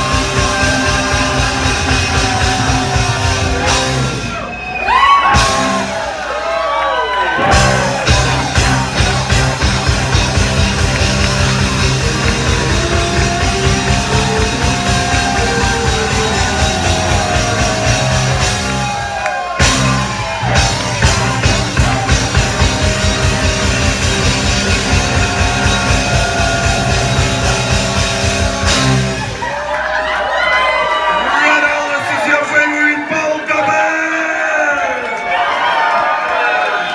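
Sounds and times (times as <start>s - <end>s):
live rock band playing: 0.0s - 4.7s, 5.3s - 6.3s, 7.4s - 29.8s.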